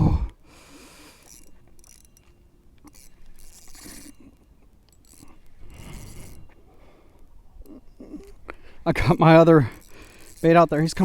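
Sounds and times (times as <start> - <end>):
fishing reel clicking and scraping: 0.3 - 11.0.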